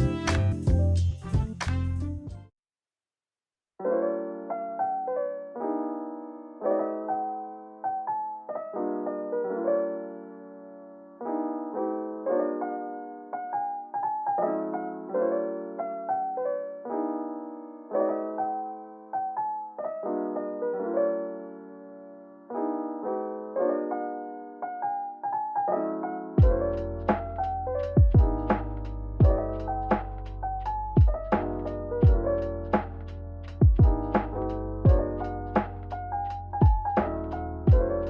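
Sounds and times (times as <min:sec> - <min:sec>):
soft piano melody: 0:03.8 - 0:38.0.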